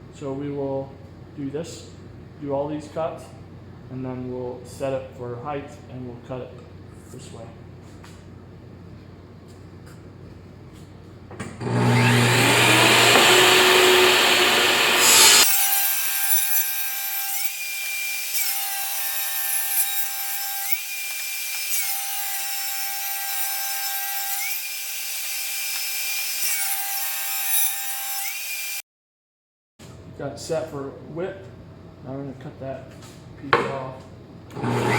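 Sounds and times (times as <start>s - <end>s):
power saw cutting wood: 11.6s - 28.8s, 34.5s - 34.9s.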